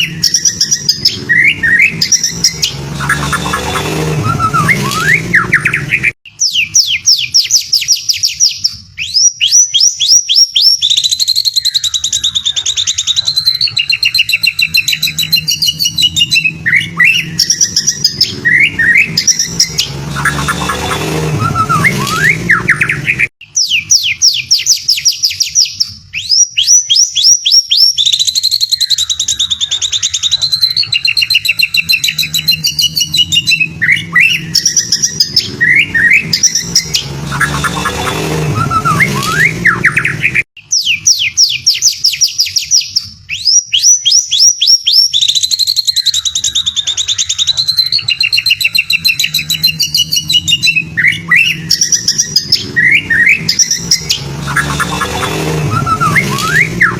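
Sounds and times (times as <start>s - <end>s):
songbird trills and whistles: 0.0s - 56.9s.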